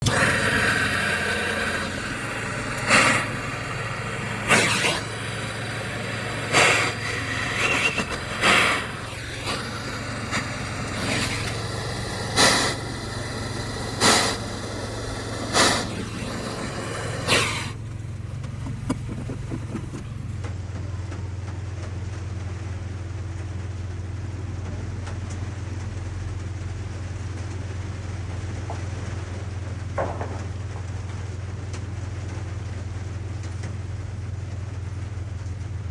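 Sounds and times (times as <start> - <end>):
brief louder torch rushes: 0.0 - 17.9
gas torch burning: 0.0 - 21.1.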